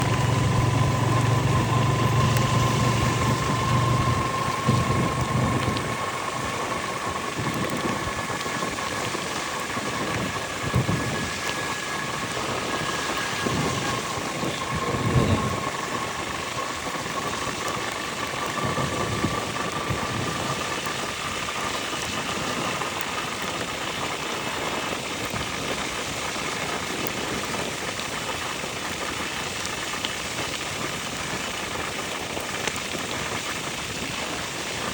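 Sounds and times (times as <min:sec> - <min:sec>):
motorcycle engine idling: 0:00.0 - 0:07.3
faint steady whine: 0:00.0 - 0:22.8
steady rain falling: 0:00.0 - 0:34.9.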